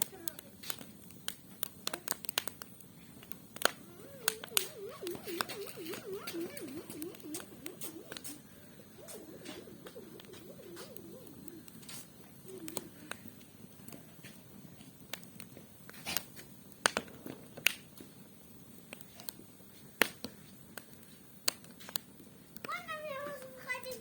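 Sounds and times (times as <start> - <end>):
wood fire crackling: 0.0 - 24.0
faint wavering voice-like tone: 3.7 - 13.3.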